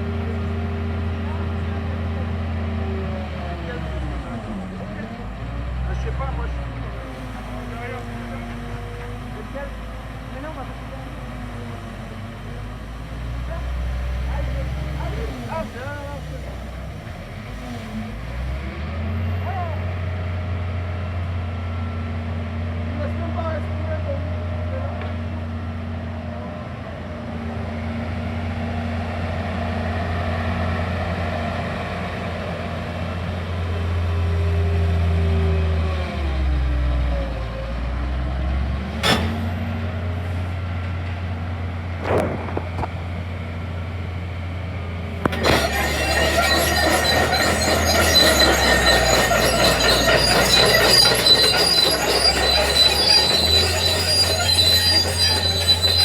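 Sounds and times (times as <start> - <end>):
steel tracks squealing and clanking: 13.5 - 18.2, 38.9 - 41.0, 45.1 - 56.0
excavator diesel engine running: 30.4 - 56.0.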